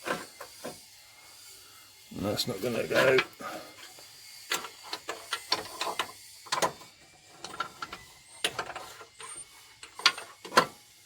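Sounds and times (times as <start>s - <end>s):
tools and metal parts clicking: 3.0s - 10.8s.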